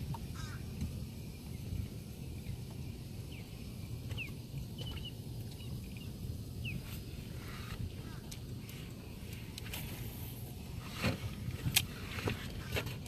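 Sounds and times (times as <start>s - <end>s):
steady low rumble: 0.0s - 13.0s
bird chirps: 3.3s - 6.9s.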